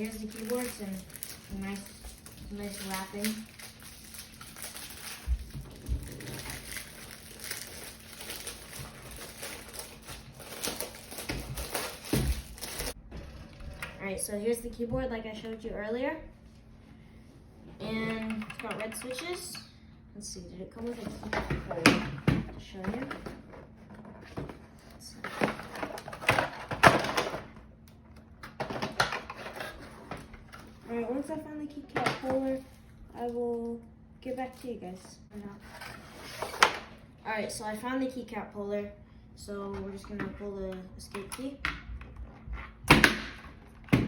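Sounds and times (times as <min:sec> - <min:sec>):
packaging wrap rustling: 0:00.0 - 0:13.0
rummaging through cardboard box: 0:00.0 - 0:13.0.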